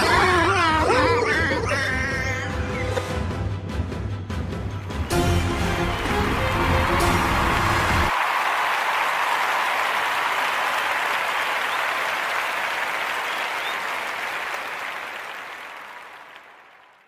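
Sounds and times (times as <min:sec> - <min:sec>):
crowd applause: 0:05.0 - 0:17.0.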